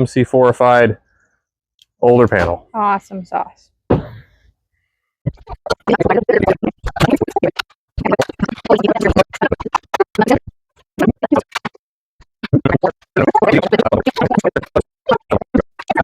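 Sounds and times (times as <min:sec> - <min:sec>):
electronic background music: 0:05.3 - 0:11.8, 0:12.4 - 0:16.0.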